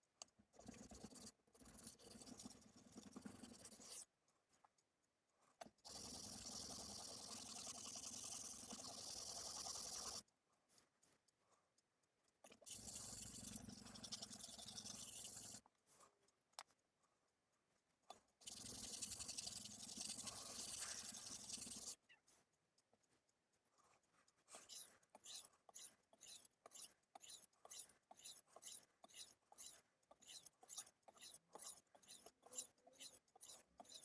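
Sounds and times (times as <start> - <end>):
knife scraping on whetstone: 18.6 - 21.9, 24.6 - 34.0.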